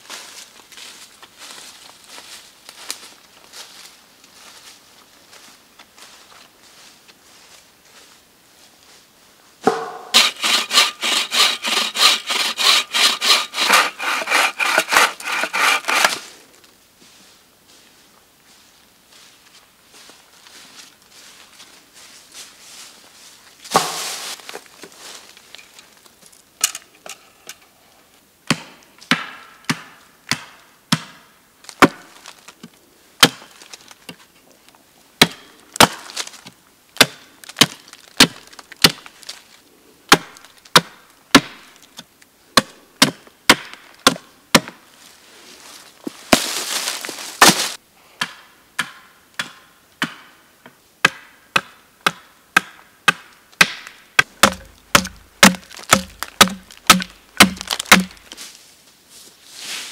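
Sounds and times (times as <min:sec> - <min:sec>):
wood being chopped: 0:09.6 - 0:16.2, 0:23.7 - 0:24.3, 0:28.5 - 0:32.2, 0:33.2 - 0:33.5, 0:35.2 - 0:36.3, 0:37.0 - 0:39.0, 0:40.1 - 0:41.7, 0:42.6 - 0:44.8, 0:46.3 - 0:46.6, 0:47.4 - 0:50.3, 0:51.0 - 0:58.4.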